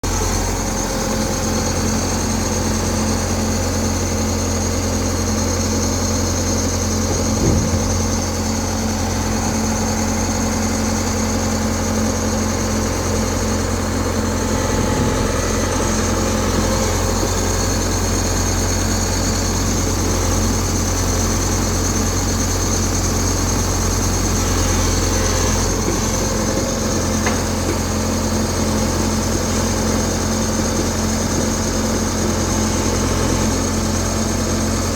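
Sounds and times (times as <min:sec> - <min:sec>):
excavator diesel engine running: 0:00.0 - 0:34.9
brief knock: 0:07.1 - 0:08.2.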